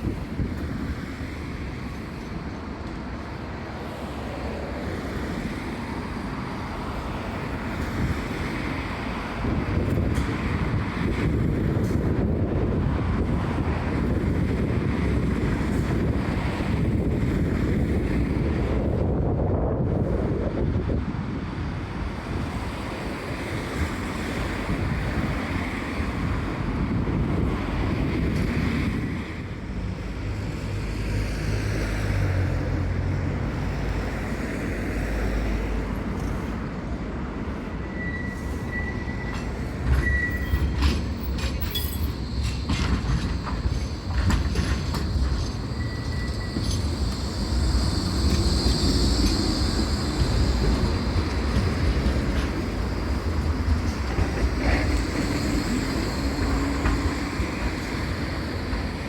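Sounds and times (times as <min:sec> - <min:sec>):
tram rumbling: 0:00.0 - 0:59.0
wind buffeting microphone: 0:07.2 - 0:30.8
thin high squeal: 0:37.9 - 0:40.8, 0:45.6 - 0:47.0.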